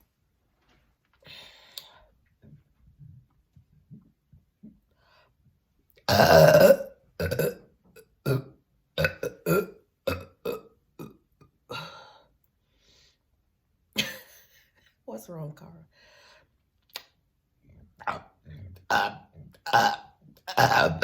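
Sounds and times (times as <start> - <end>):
person burping: 6.1 - 12.0, 18.0 - 21.0.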